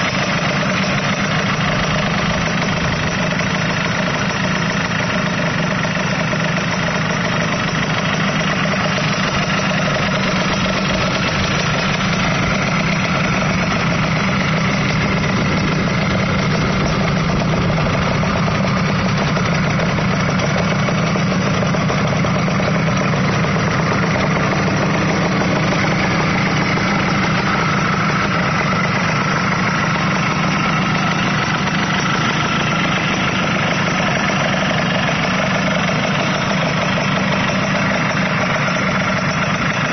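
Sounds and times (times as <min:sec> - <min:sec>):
small motorcycle engine idling: 0:00.0 - 0:39.9.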